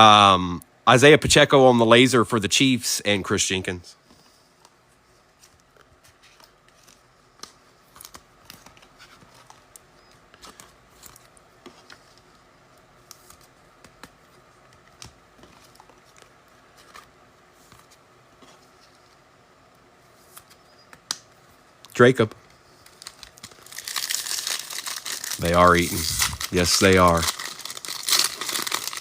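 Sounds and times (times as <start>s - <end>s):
trading cards and wrappers rustling: 13.0s - 19.2s, 22.0s - 29.0s.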